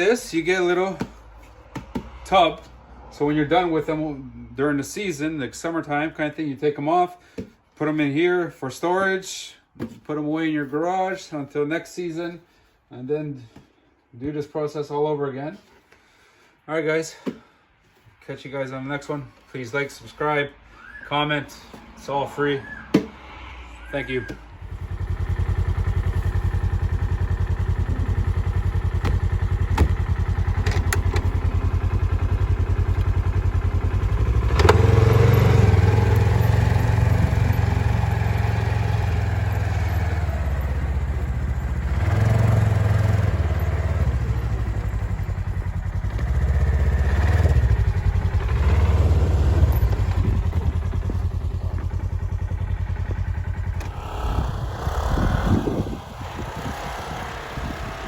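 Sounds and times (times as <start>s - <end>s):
utility vehicle engine running: 24.6s - 58.0s.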